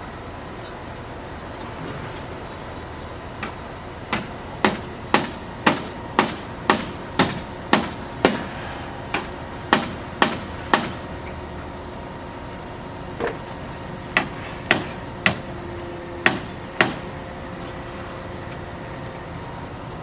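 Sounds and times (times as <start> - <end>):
background machine hum: 0.0 - 20.0
sharp hammer strikes: 4.1 - 11.4, 14.2 - 15.4, 16.2 - 17.1.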